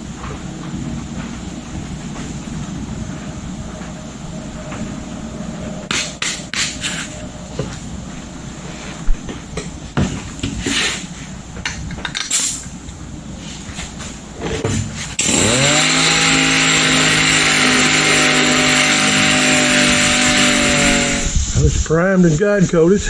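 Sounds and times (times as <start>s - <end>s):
knocks and scraping: 0.0s - 12.7s, 13.4s - 21.3s
power tool motor running: 2.9s - 7.6s, 15.1s - 21.4s
strong hiss: 10.5s - 11.4s, 12.2s - 12.8s, 15.0s - 22.7s.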